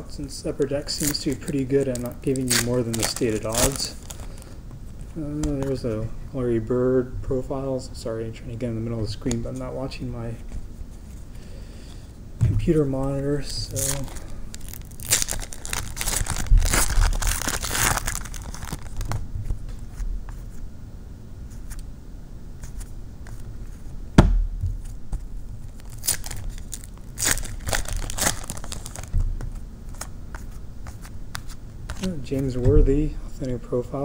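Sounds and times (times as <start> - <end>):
wrapper tearing and crinkling: 0.8 - 4.5, 13.6 - 19.2, 25.6 - 29.2.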